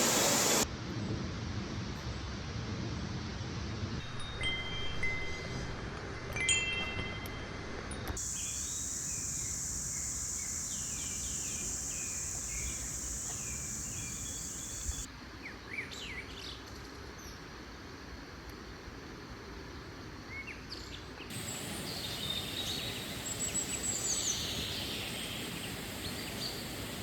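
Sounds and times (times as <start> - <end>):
high-pitched hiss: 0.0 - 0.7, 8.2 - 15.1, 21.3 - 27.0
bell-like chime tones: 4.0 - 8.2
birds chirping: 8.2 - 15.1, 21.3 - 27.0.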